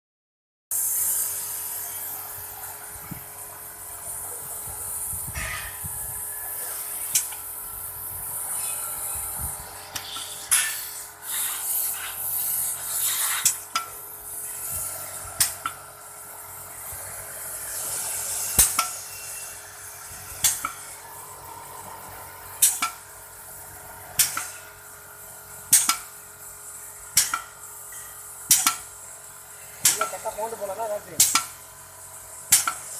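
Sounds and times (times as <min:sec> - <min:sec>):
air hiss: 0:00.7 - 0:03.4, 0:04.0 - 0:21.9, 0:24.2 - 0:27.7, 0:28.4 - 0:32.9
sharp metal clacks: 0:25.7 - 0:26.1, 0:27.2 - 0:27.5, 0:28.5 - 0:28.9, 0:29.8 - 0:30.3, 0:31.2 - 0:31.6, 0:32.5 - 0:32.9.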